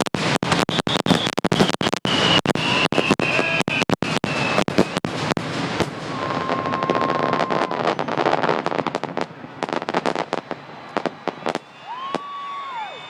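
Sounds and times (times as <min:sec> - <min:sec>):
fireworks bursting and crackling: 0:00.0 - 0:13.0
high firework whistle: 0:00.2 - 0:08.8, 0:09.7 - 0:13.0
steady lower whistle: 0:00.8 - 0:05.0, 0:06.1 - 0:08.2, 0:10.2 - 0:13.0.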